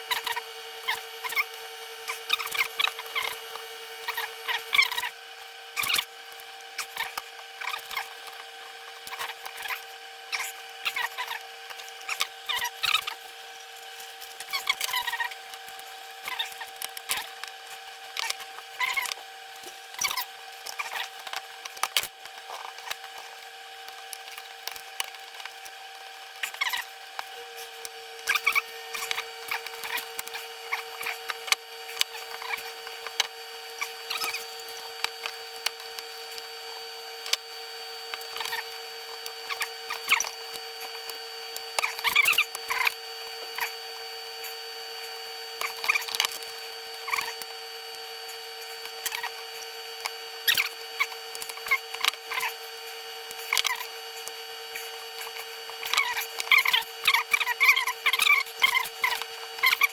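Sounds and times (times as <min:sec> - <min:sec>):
steady hum: 0:00.0 - 0:59.9
plastic casing clicks and scrapes: 0:45.6 - 0:46.5.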